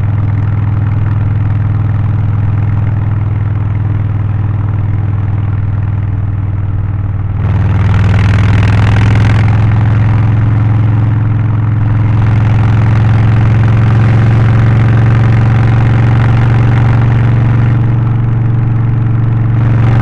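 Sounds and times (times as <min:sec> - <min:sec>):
motorcycle engine running steadily: 0:00.0 - 0:20.0.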